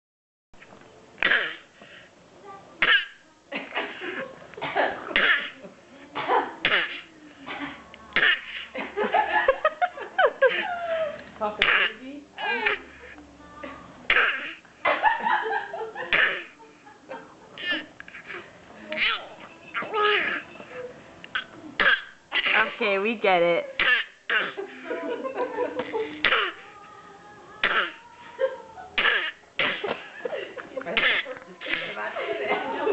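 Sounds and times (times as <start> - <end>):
baby coughing: 1.2 - 1.7, 2.8 - 5.6, 6.2 - 8.6, 11.6 - 13.0, 14.1 - 14.6, 16.1 - 16.6, 17.6 - 19.2, 19.8 - 20.4, 21.3 - 22.8, 23.7 - 24.6, 25.8 - 26.6, 27.6 - 28.0, 29.0 - 30.1, 30.9 - 32.0.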